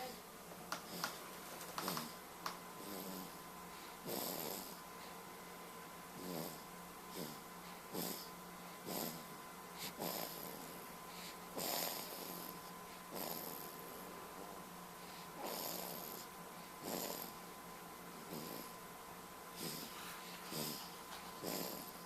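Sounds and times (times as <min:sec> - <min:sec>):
person snoring: 0:02.8 - 0:03.4, 0:04.0 - 0:04.8, 0:06.2 - 0:10.8, 0:11.6 - 0:13.8, 0:15.4 - 0:17.4, 0:18.3 - 0:18.8, 0:19.6 - 0:22.0.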